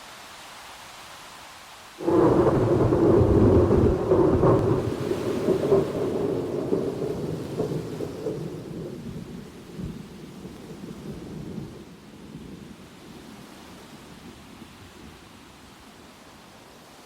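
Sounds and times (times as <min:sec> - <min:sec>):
rain hiss: 0:00.0 - 0:17.0
thunder rumbling: 0:02.0 - 0:12.6.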